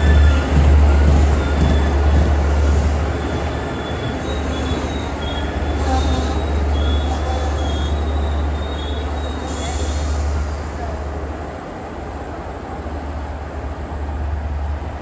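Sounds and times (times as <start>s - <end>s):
high wheel squeals: 0.0s - 10.4s
diesel train rumbling: 0.0s - 15.0s.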